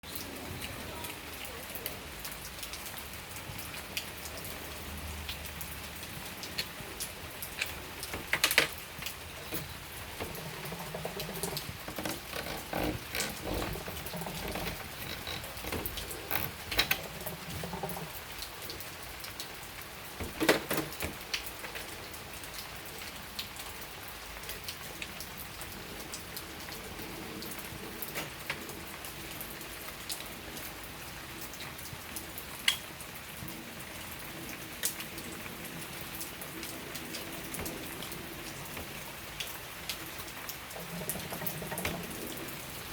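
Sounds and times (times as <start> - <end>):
rain pattering: 0.0 - 42.9.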